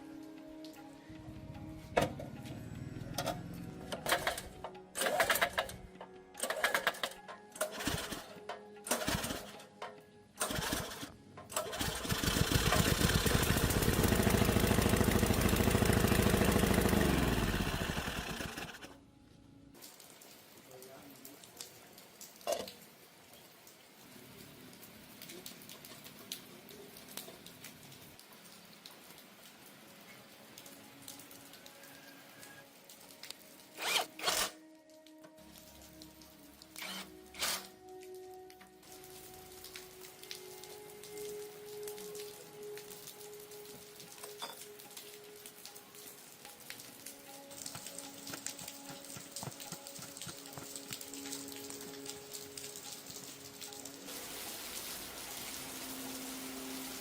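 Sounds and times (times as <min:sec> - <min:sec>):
faint background music: 0:00.0 - 0:13.1, 0:18.7 - 0:57.0
small gasoline engine running: 0:10.4 - 0:19.0.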